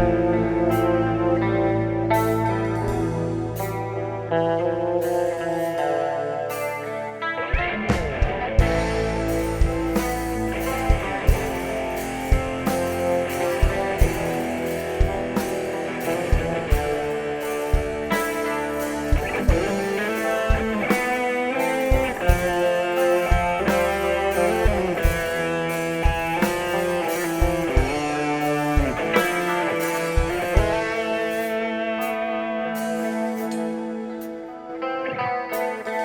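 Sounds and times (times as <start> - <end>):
guitar melody: 0.0 - 36.0
live band playing: 0.0 - 36.0
drum beat: 7.6 - 31.3.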